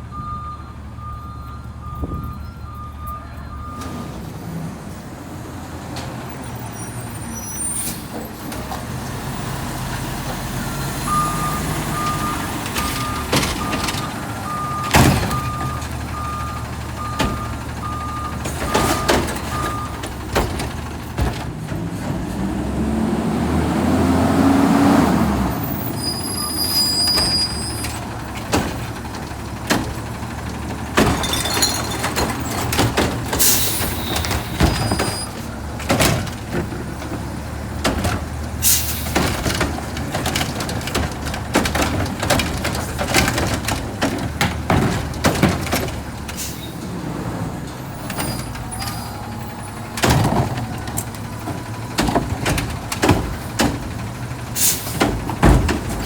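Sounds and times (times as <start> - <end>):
diesel engine revving: 0.0 - 56.0
metal clanks and knocks: 11.8 - 22.4, 27.1 - 46.9, 47.6 - 56.0
air brake hisses: 38.6 - 39.2, 54.6 - 55.0.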